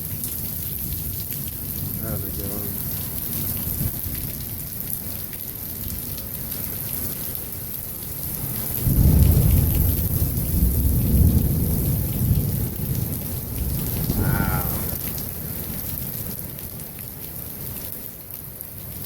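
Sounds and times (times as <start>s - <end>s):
heavy rain pouring: 0.0s - 19.0s
thunder rumbling: 8.8s - 16.3s.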